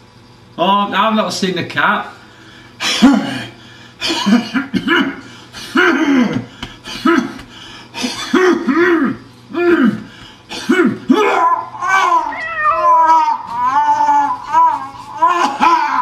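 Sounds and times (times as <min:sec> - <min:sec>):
cat retching: 0:12.2 - 0:13.5.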